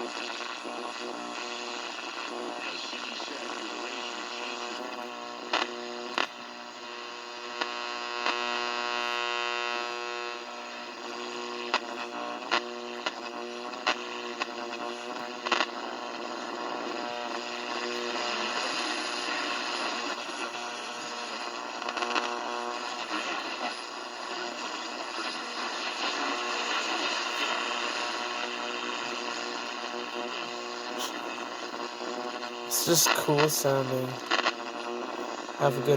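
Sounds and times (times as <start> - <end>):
radio buzzing hum: 0.0 - 35.9.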